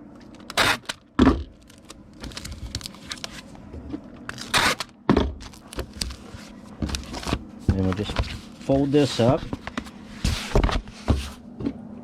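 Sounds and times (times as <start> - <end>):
adhesive tape ripping: 0.4 - 1.0, 4.3 - 5.8
cardboard mailer rustling and knocking: 5.1 - 11.4.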